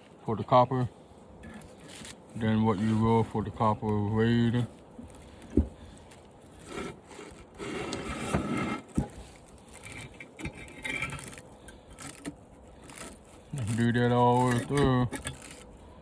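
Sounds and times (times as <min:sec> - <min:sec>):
metallic scraping and crinkling: 0:01.4 - 0:16.0.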